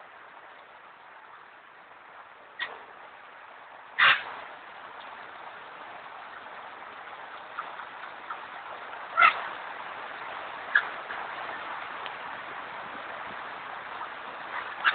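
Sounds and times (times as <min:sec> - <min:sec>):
falling water hiss: 0:00.0 - 0:14.9
parrot squawking: 0:04.0 - 0:04.2, 0:09.1 - 0:09.4.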